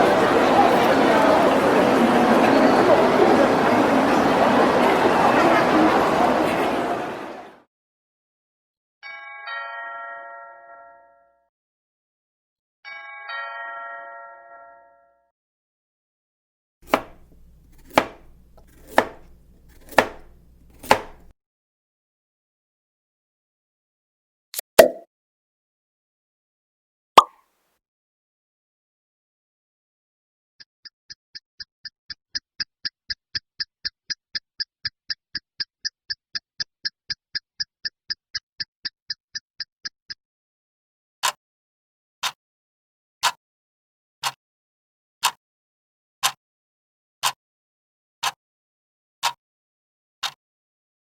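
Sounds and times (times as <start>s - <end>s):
electronic ticks: 30.8s - 40.2s.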